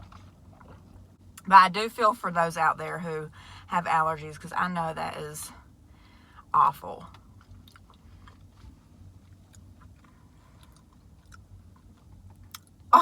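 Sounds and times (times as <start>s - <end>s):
steady low hum: 0.0s - 13.0s
person chewing food: 7.1s - 13.0s.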